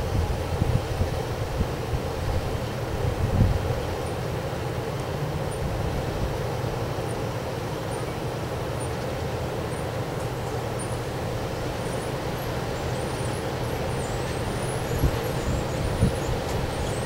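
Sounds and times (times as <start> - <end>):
strong wind blowing: 0.0 - 4.0, 14.3 - 17.0.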